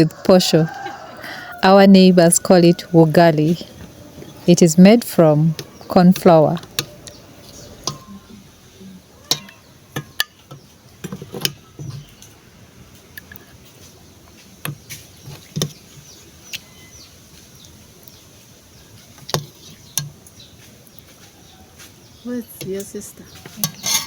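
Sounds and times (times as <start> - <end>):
plates and spoons clinking: 9.3 - 10.4, 23.4 - 24.0.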